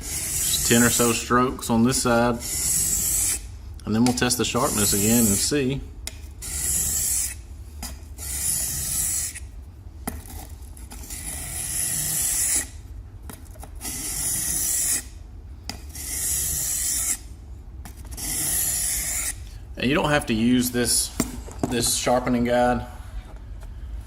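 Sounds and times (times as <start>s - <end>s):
knife scraping on whetstone: 0.0s - 1.3s, 2.4s - 3.4s, 4.5s - 5.5s, 6.4s - 7.4s, 8.2s - 9.5s, 11.0s - 12.8s, 13.8s - 15.1s, 15.9s - 17.2s, 18.1s - 19.4s.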